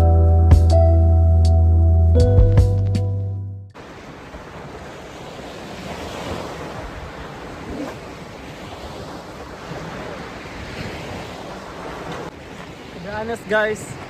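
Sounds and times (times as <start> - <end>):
strong wind: 3.8 - 14.0
surf washing onto beach: 3.8 - 14.0.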